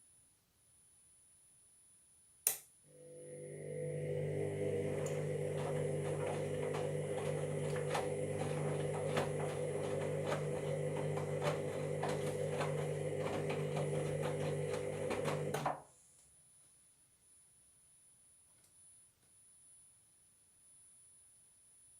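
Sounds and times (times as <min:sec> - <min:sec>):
washing machine motor hum: 0:02.9 - 0:15.8.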